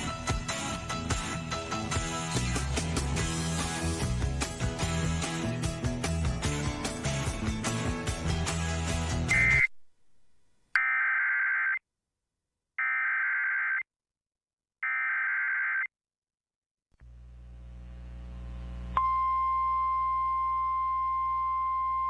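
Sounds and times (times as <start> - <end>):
electronic data bursts: 9.3 - 9.7
warning alarm tone: 9.3 - 9.8.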